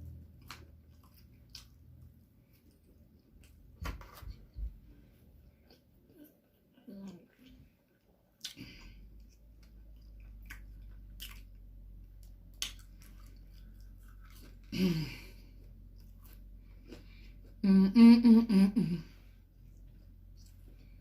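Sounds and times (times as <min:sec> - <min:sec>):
woman chewing food: 0:00.0 - 0:17.6
woman humming: 0:17.6 - 0:19.1.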